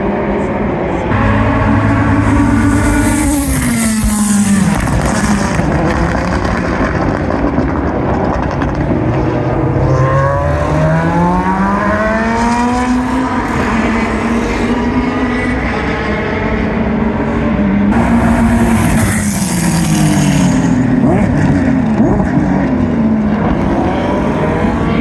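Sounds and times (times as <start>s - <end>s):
exhaust crackles: 1.1s - 11.6s, 17.9s - 23.7s
race car engine revving: 1.1s - 25.0s.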